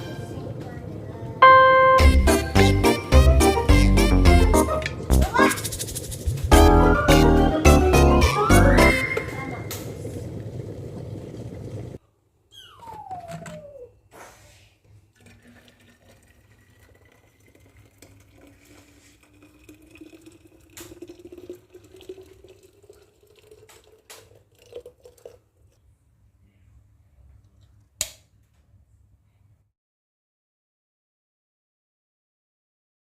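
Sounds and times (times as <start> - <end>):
background music: 1.4 - 5.5, 6.5 - 9.2
water pouring into a flask: 15.1 - 25.8.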